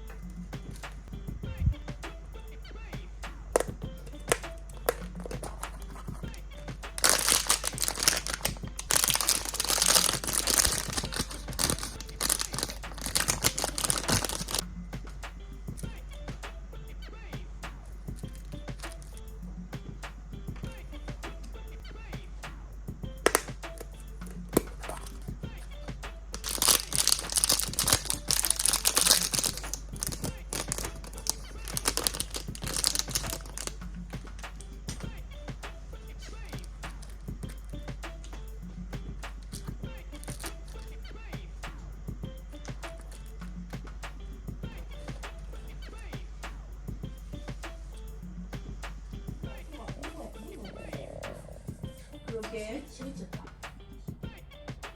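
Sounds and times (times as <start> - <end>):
plastic wrapping crinkling: 3.6 - 14.6, 18.2 - 19.2, 23.2 - 25.3, 26.3 - 35.2, 36.4 - 37.6, 39.4 - 40.9.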